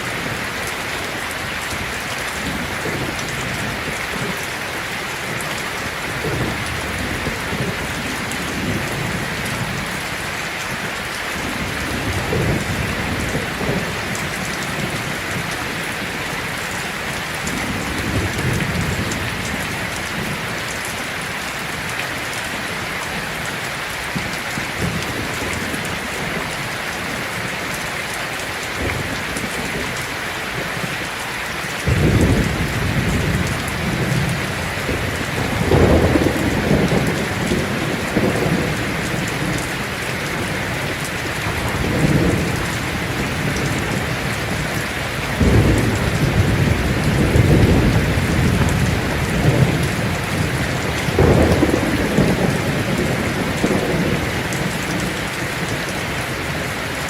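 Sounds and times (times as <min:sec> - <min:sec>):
heavy rain on a tin roof: 0:00.0 - 0:57.0
thunder rumbling: 0:11.4 - 0:16.4, 0:31.8 - 0:56.7.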